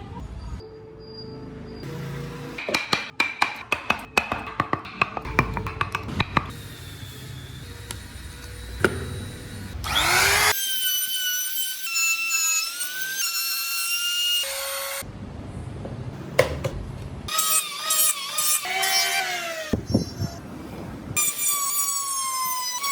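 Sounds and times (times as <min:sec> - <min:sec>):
sharp knocks: 0:02.6 - 0:06.6
power tool grinding wood: 0:06.0 - 0:13.7.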